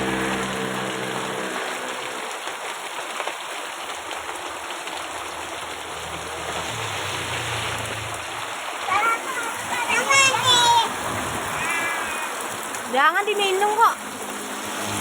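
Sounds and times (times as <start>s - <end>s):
heavy rain pattering: 0.0s - 15.0s.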